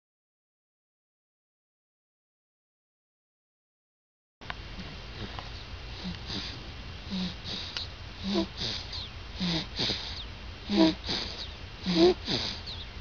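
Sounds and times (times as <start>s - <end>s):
rasping breaths with crowing tone: 5.2s - 12.9s.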